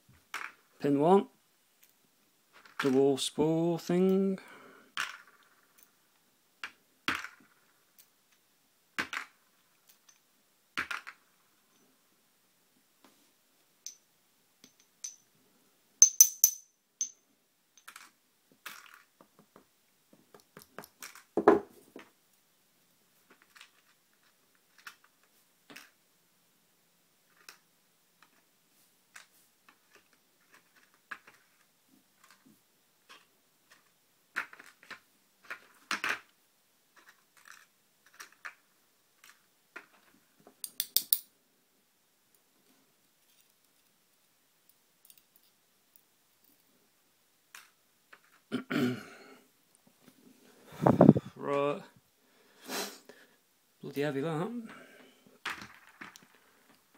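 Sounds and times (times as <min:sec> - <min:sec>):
small pins tinkling: 0:13.8 - 0:15.4, 0:16.0 - 0:19.1, 0:43.1 - 0:46.7.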